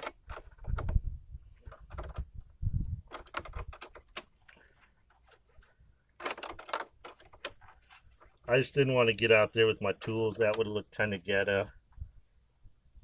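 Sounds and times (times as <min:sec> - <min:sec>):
small metal parts clinking: 0:03.1 - 0:04.3, 0:06.2 - 0:07.7.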